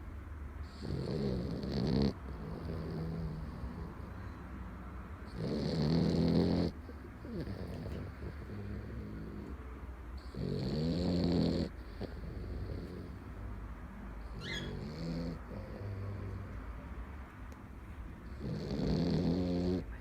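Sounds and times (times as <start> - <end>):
pet snoring: 0.6 - 4.4, 5.2 - 9.6, 10.2 - 13.4, 14.2 - 16.8, 18.2 - 20.0.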